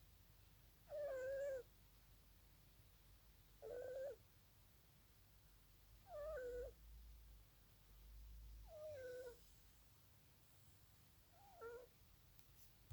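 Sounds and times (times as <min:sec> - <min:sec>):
cat snoring with whistling snores: 0:06.1 - 0:06.8, 0:08.6 - 0:09.4.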